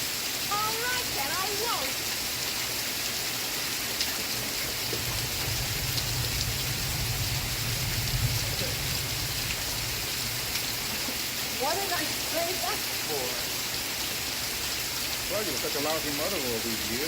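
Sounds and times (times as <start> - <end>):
steady rain falling: 0.0 - 17.0
low rumble: 5.1 - 10.6.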